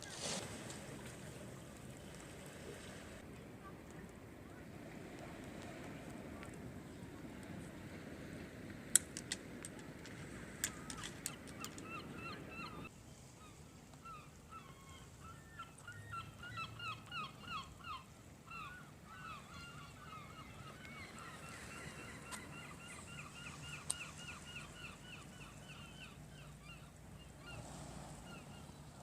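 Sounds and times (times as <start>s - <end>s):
gulls calling: 10.6s - 12.9s.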